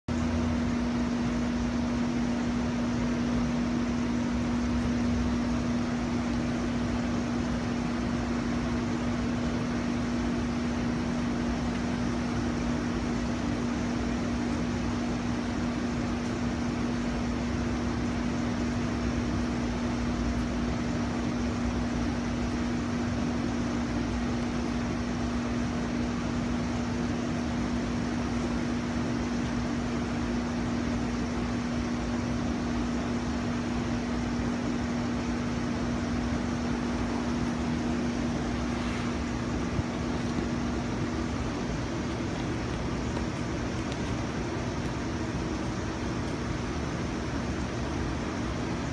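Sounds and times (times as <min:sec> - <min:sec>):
even hiss: 0:37.7 - 0:41.9.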